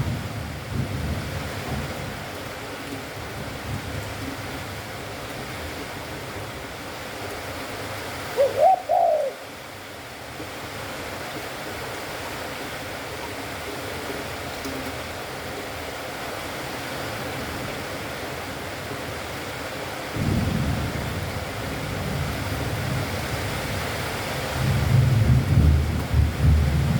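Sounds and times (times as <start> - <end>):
dove cooing: 8.3 - 9.6.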